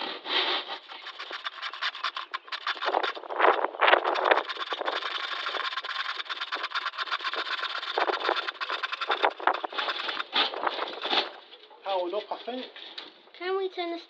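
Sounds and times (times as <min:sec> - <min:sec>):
scroll saw running: 0:00.8 - 0:10.4.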